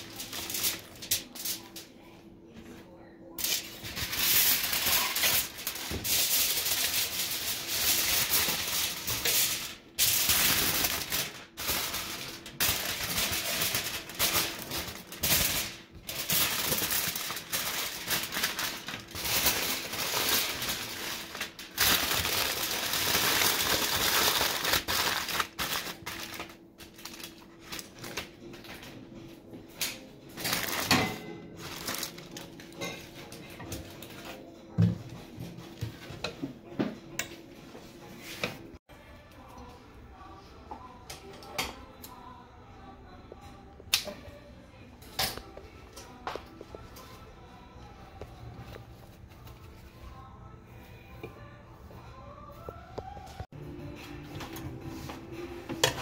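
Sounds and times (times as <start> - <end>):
crinkling and rustling: 0.0 - 1.8, 3.4 - 29.0, 30.4 - 34.4.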